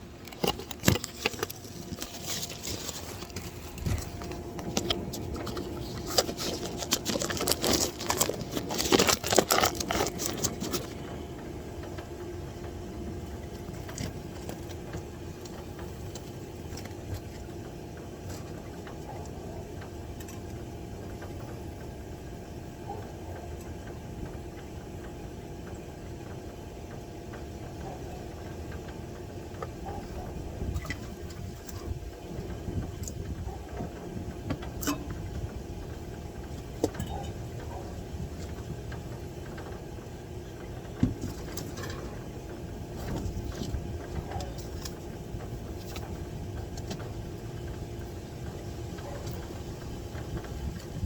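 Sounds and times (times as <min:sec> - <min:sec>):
rattling handling noise: 0:00.0 - 0:11.0
machine hum: 0:00.0 - 0:51.0.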